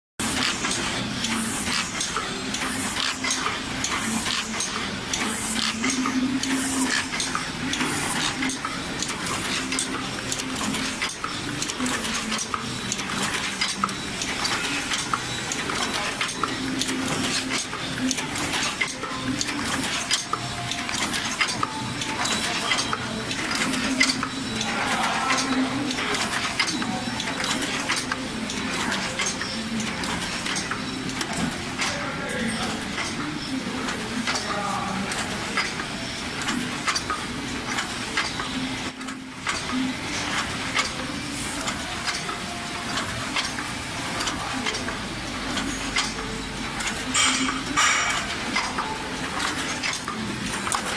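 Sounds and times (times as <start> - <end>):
machine clattering: 0.2 - 50.9.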